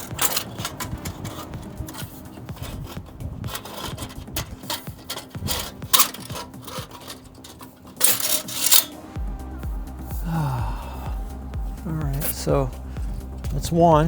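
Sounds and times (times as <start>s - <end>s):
metal scraping and clicking: 0.0s - 9.1s.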